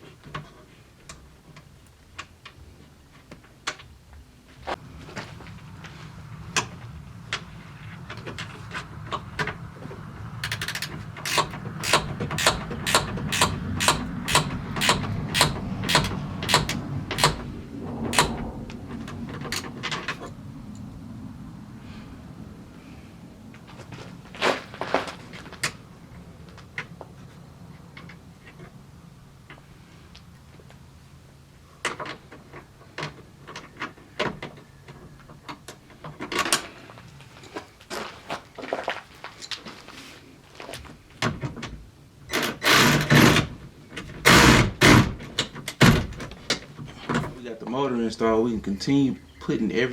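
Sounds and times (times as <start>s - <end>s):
hand ratchet clicking: 10.4s - 17.5s, 18.1s - 18.4s.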